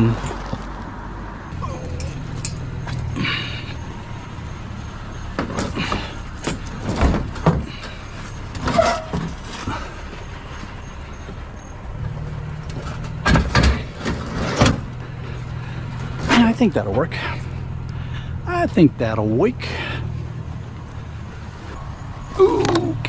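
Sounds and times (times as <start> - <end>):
scrap metal knocks and clatters: 5.1 - 11.4, 12.3 - 16.6.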